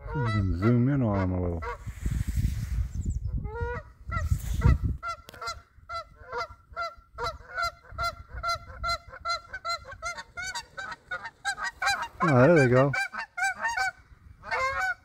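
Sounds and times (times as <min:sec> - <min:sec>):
geese honking: 0:00.0 - 0:01.9, 0:03.5 - 0:15.0
low rumble on microphone: 0:01.3 - 0:05.1.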